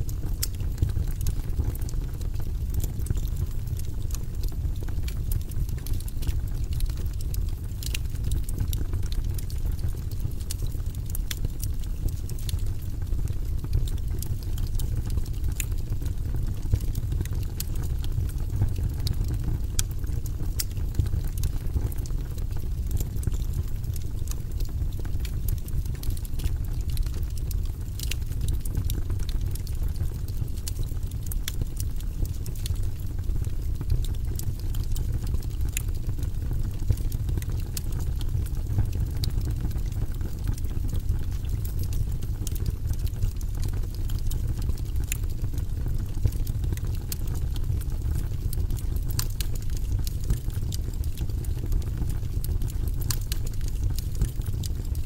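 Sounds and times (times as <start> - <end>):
burning logs crackling and popping: 0.0 - 55.0
low rumble of flames: 0.0 - 55.0.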